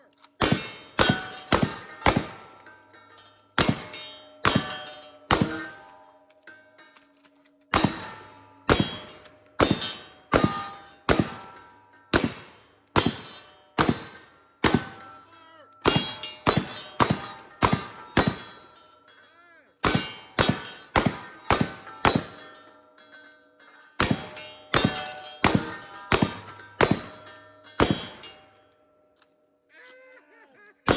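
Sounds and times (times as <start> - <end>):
ringing metallic clang: 0.0 - 29.2
shotgun shots: 0.4 - 2.5, 3.6 - 5.8, 7.7 - 15.2, 15.8 - 18.6, 19.8 - 22.4, 24.0 - 28.3.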